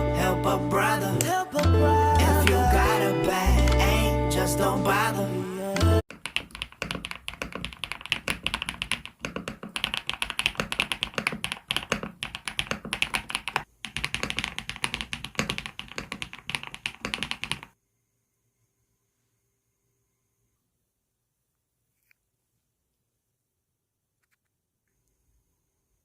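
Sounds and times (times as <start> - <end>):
fast mechanical keyboard typing: 6.1 - 17.8.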